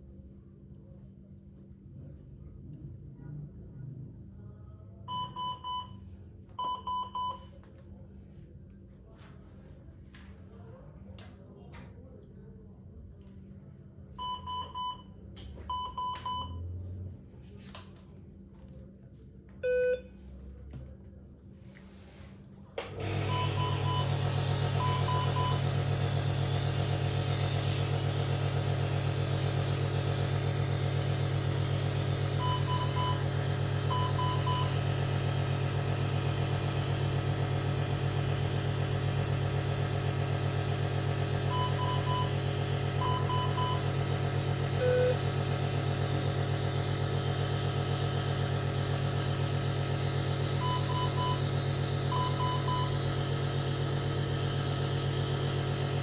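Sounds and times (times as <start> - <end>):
compressor humming: 22.8 - 56.0
monitor alarm high beeps: 33.9 - 34.8, 41.5 - 44.0, 44.8 - 45.3, 50.6 - 53.1
low single beep: 44.8 - 45.2.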